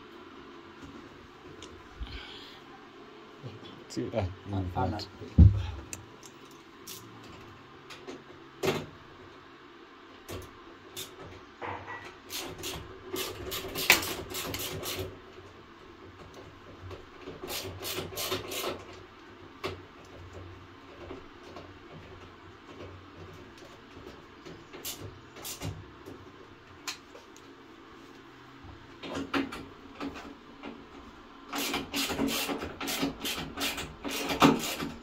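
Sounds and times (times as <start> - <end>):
hard thump: 5.4 - 5.8.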